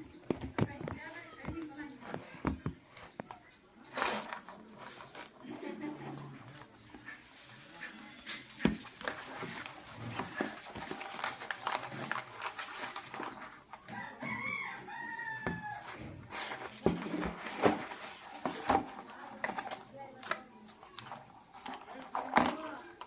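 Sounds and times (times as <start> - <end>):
rooster crowing: 13.9 - 16.0.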